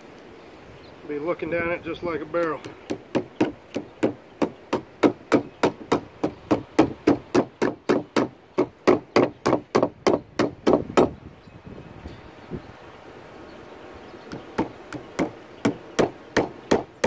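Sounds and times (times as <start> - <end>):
hammer driving nails into wood: 2.6 - 11.1, 14.4 - 16.9.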